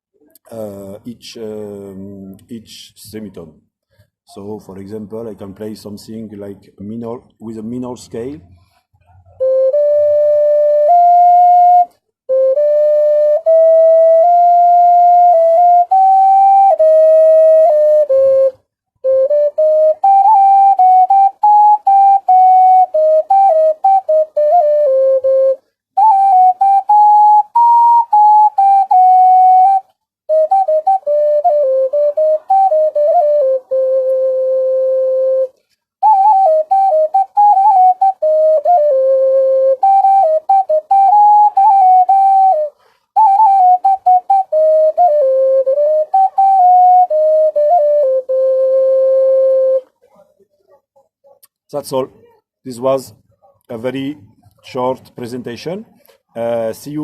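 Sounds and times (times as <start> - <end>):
ocarina playing a tune: 9.3 - 50.0.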